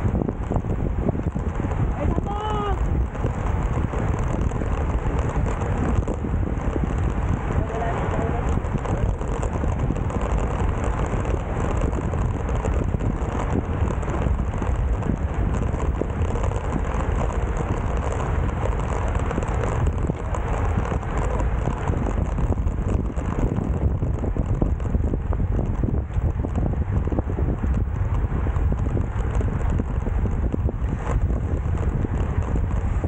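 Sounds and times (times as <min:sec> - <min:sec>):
wind buffeting microphone: 0:00.0 - 0:33.0.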